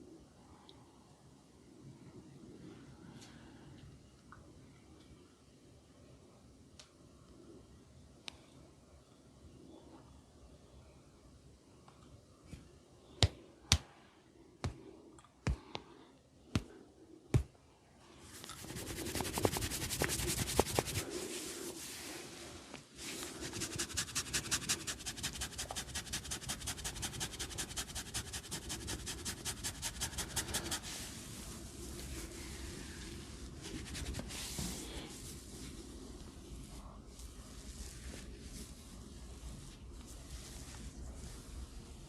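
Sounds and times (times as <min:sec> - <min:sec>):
hands rubbing hair and scalp: 0:18.3 - 0:42.0.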